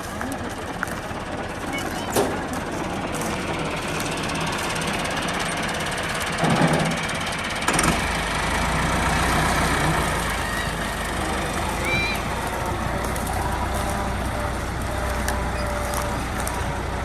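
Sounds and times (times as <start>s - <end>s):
heavy low rumble: 0.0s - 7.4s
tractor engine running: 0.0s - 17.0s
threshing machine din: 0.3s - 17.0s.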